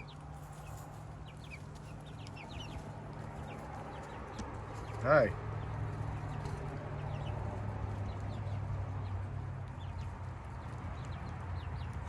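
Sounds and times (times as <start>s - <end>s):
chicks peeping and clucking: 0.0s - 12.0s.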